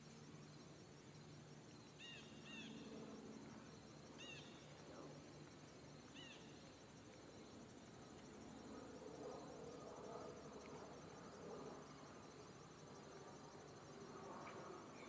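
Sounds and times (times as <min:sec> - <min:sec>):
faint bird chirps: 0:02.0 - 0:02.9, 0:04.2 - 0:04.7, 0:06.1 - 0:06.6.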